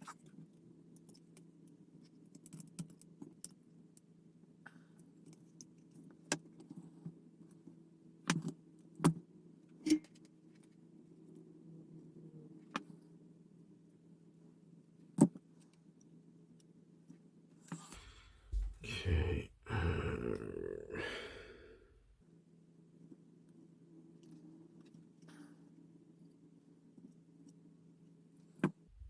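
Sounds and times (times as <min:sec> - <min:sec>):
small parts clicking and tapping: 0:00.0 - 0:04.1
faint steady hum: 0:00.0 - 0:29.0.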